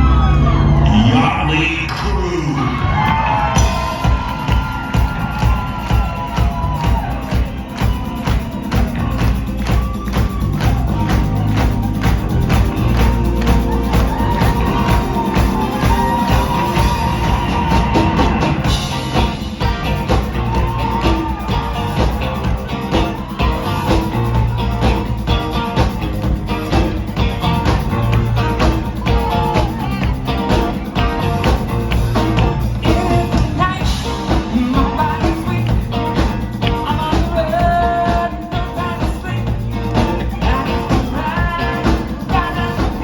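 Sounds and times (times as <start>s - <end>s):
live rock band playing: 2.2s - 43.0s
person singing: 26.7s - 43.0s.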